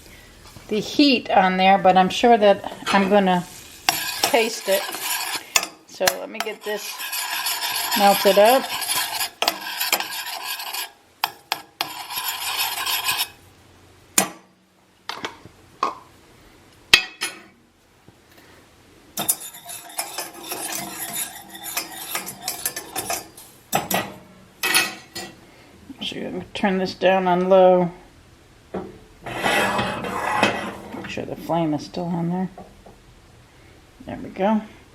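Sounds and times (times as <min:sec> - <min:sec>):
utensil stirring and scraping pot: 0:02.4 - 0:13.4, 0:19.2 - 0:24.1, 0:29.2 - 0:31.0
utensil clinking against pot: 0:03.9 - 0:13.4, 0:19.2 - 0:25.3.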